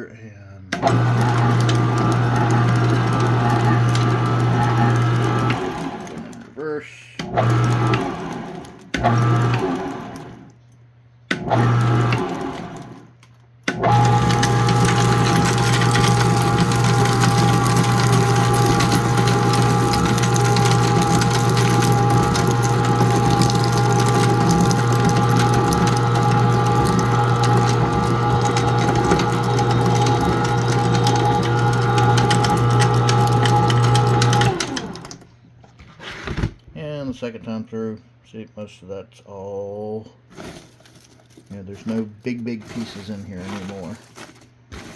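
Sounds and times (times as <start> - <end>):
shredder motor hum and whine: 0.8 - 6.5, 7.2 - 10.4, 11.3 - 13.0, 13.7 - 35.2
shredder crackling plastic: 0.8 - 6.6, 7.2 - 10.4, 11.3 - 13.1, 13.7 - 35.3, 40.3 - 44.9.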